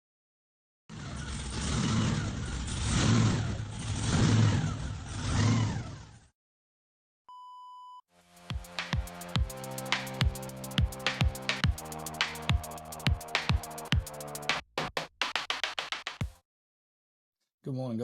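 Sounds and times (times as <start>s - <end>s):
short electronic beep: 7.3s - 8.0s
music with a beat: 8.3s - 16.4s.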